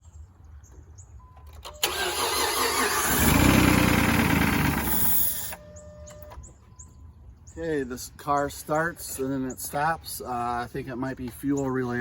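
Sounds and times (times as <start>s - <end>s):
car engine cranking: 1.5s - 5.6s
car engine running: 3.0s - 5.5s.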